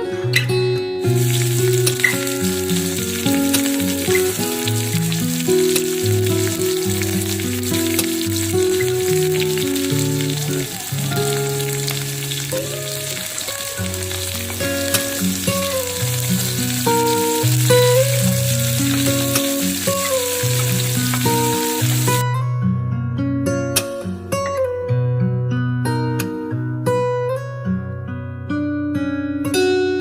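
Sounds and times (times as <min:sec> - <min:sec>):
instrumental background music: 0:00.0 - 0:22.6
food sizzling in hot oil: 0:01.1 - 0:22.2.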